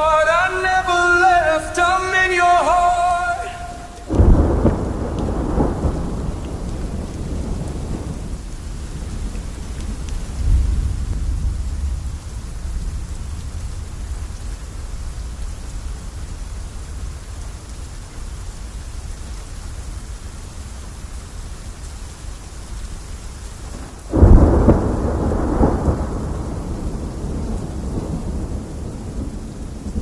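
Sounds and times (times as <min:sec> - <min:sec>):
steady rain: 0:00.0 - 0:30.0
low rumbles of thunder: 0:03.8 - 0:16.2, 0:23.6 - 0:30.0.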